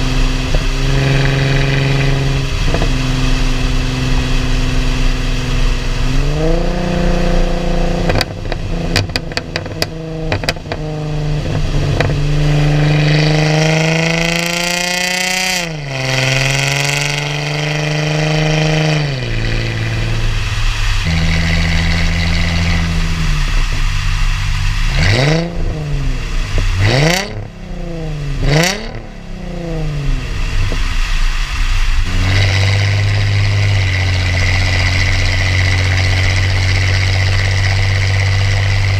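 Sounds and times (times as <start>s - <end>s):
car engine revving: 0.0s - 38.9s
exhaust crackles and pops: 0.0s - 38.9s.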